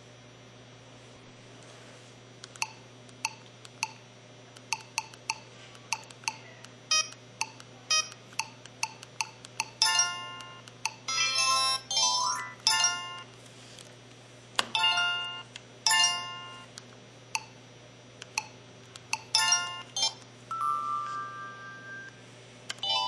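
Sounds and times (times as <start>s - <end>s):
short phone beeps: 20.0s - 22.2s.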